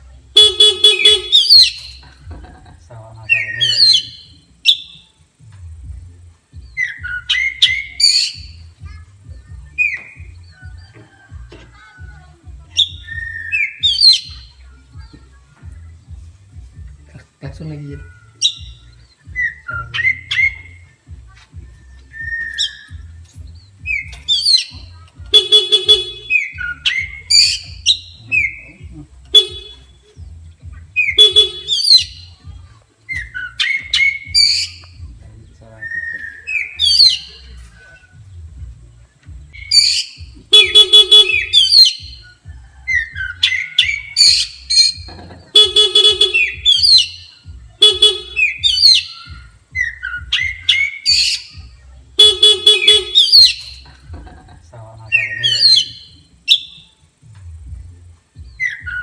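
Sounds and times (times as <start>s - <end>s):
buzzy horn blasts: 0.3s - 2.0s, 24.0s - 30.1s, 30.7s - 32.5s, 39.5s - 42.2s, 43.8s - 49.8s, 50.4s - 54.2s
bird singing whistling phrases: 0.4s - 2.0s, 3.3s - 5.2s, 6.5s - 8.8s, 12.7s - 14.6s, 17.7s - 21.1s, 21.9s - 30.2s, 30.8s - 32.5s, 33.1s - 35.0s, 35.8s - 38.2s, 39.5s - 53.9s, 55.1s - 56.9s, 58.4s - 59.0s.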